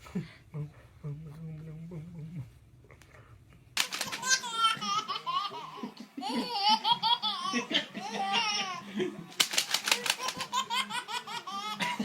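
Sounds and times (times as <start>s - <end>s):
baby laughing: 3.8s - 8.8s, 9.4s - 12.0s
sharp clicks: 9.4s - 10.5s.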